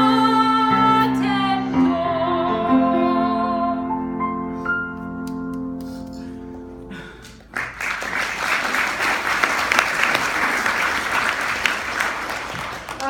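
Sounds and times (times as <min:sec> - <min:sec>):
audience applause: 0:07.3 - 0:13.0.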